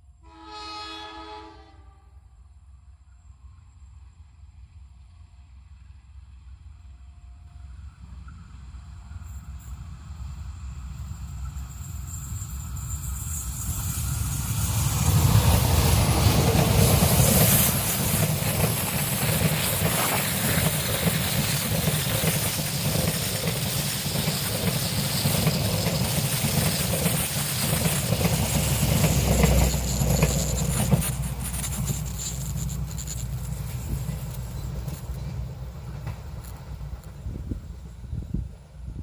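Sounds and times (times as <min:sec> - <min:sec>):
wheel and rail noise: 0:03.0 - 0:39.0
locomotive engine working: 0:07.4 - 0:38.4.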